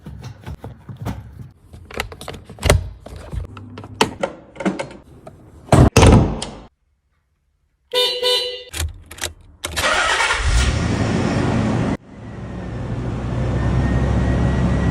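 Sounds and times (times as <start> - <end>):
car horn: 7.9 - 8.7
car engine starting and idling: 9.6 - 14.9.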